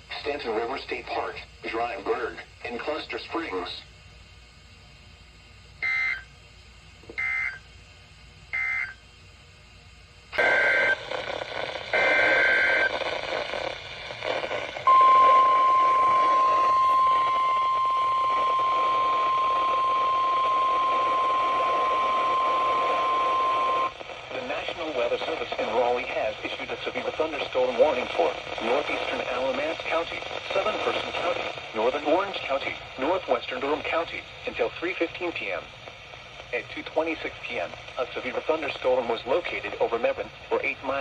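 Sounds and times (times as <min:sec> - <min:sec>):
radio hiss: 0:00.0 - 0:06.1, 0:10.3 - 0:41.0
steady warning alarm tone: 0:07.2 - 0:07.6, 0:08.5 - 0:09.0, 0:14.4 - 0:24.0.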